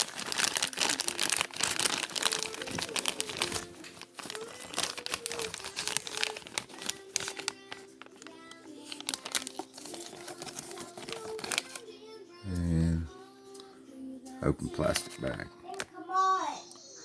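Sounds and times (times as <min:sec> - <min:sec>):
plastic bag crinkling: 0:00.0 - 0:11.9.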